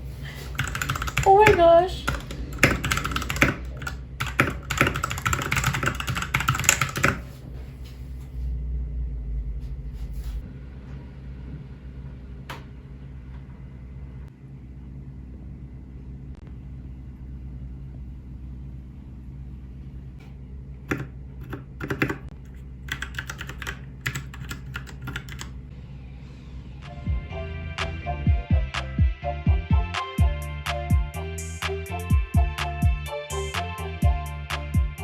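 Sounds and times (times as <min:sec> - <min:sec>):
steady low hum: 0:00.0 - 0:31.4
mechanical keyboard typing: 0:00.5 - 0:07.3, 0:20.9 - 0:25.5.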